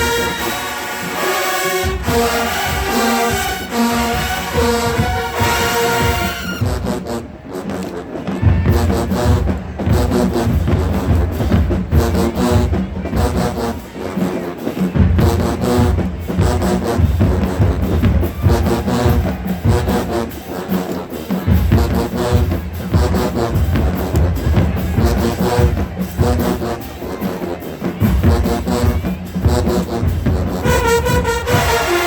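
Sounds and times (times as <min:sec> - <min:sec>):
brass: 0:00.0 - 0:32.0
heavy bass drums and percussion: 0:14.7 - 0:32.0.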